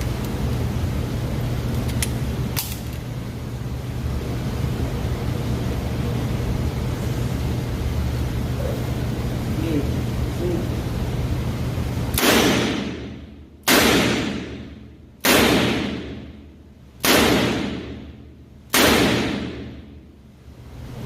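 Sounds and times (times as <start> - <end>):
revolver shots echoing: 12.1 - 16.4, 17.0 - 19.9.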